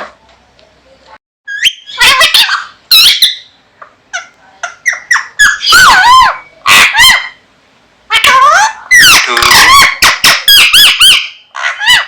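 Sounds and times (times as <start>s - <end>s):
parrot squawking and chirping: 1.5s - 7.4s, 8.1s - 12.0s.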